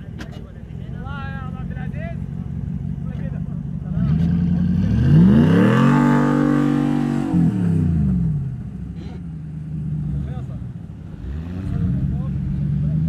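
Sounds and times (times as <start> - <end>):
vehicle engine revving hard: 3.9 - 8.6, 10.0 - 13.0.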